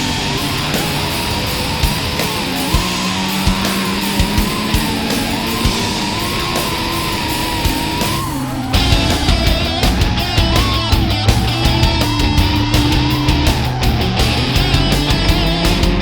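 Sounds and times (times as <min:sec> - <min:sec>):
distorted electric guitar: 0:00.0 - 0:16.0
steady drum beat: 0:00.0 - 0:16.0
wavering lead guitar line: 0:00.0 - 0:16.0.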